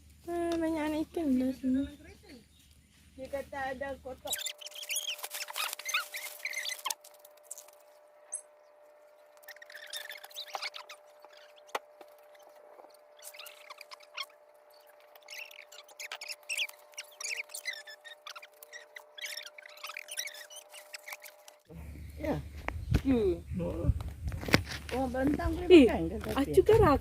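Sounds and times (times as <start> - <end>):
faint steady hum: 0.0 - 27.0
high-pitched chirps and squeaks: 4.2 - 21.7.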